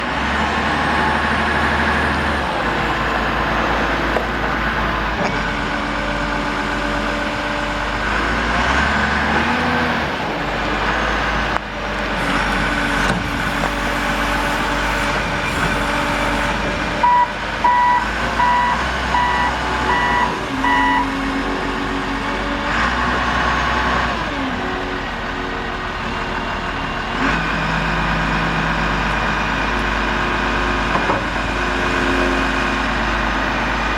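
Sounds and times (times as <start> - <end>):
diesel wheel loader engine: 0.0 - 33.9
backup alarm beeping: 17.0 - 21.2.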